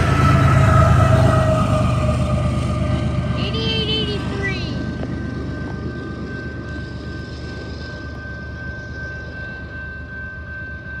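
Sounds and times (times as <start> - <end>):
high-pitched squeal: 0.0 - 4.8
train wheels rumbling on rail: 0.0 - 11.0.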